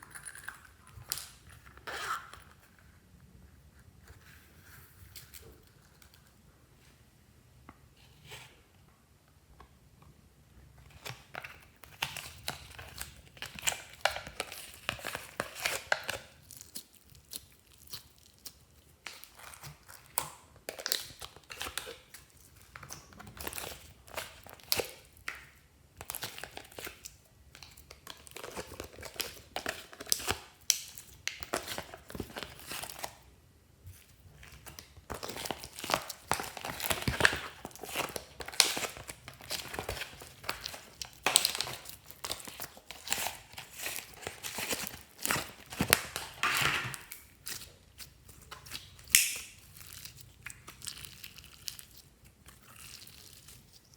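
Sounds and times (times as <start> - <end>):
slime crackling and popping: 11.5 - 33.2, 34.4 - 53.9.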